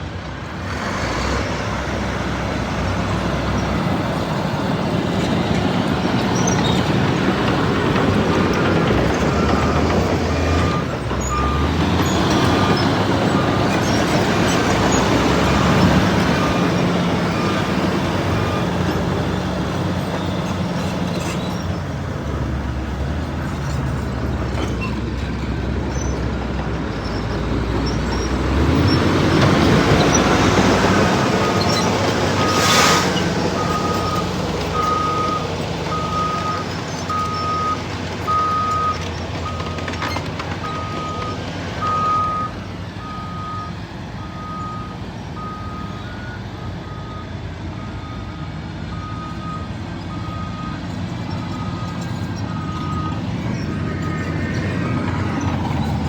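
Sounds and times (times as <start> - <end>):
bulldozer engine running: 0.0 - 56.0
reversing alarm beeping: 30.8 - 55.9.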